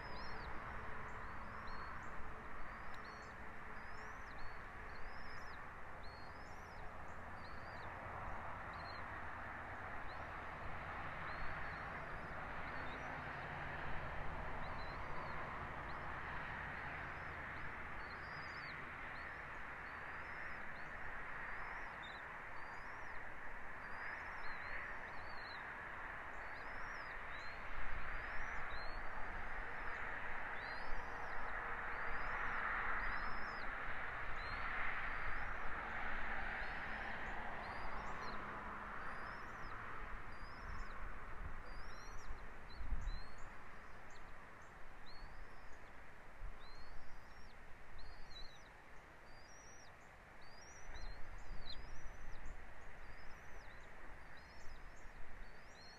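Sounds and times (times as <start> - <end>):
bird chirping: 0.0 - 7.9, 18.0 - 25.6, 26.3 - 29.1, 29.8 - 33.7, 39.0 - 46.0, 46.6 - 55.9.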